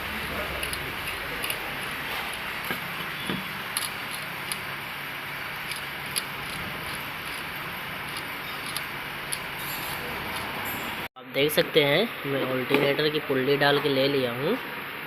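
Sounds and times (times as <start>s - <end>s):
pulley ticking and clicking: 0.5s - 2.4s, 5.6s - 9.5s.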